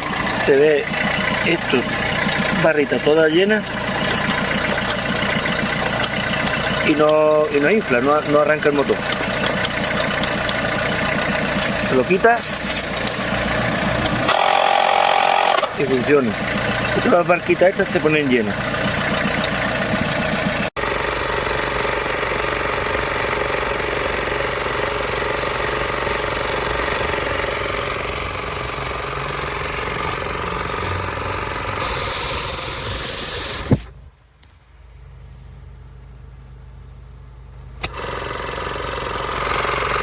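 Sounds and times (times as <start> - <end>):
small compressor rattling: 0.0 - 34.0, 37.8 - 40.0
loud hiss of air: 31.7 - 33.9.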